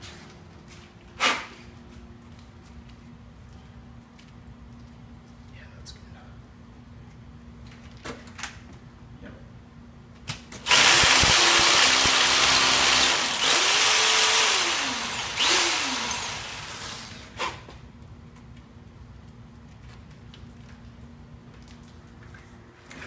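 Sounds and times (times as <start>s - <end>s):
electric drill boring into concrete: 10.6s - 17.3s.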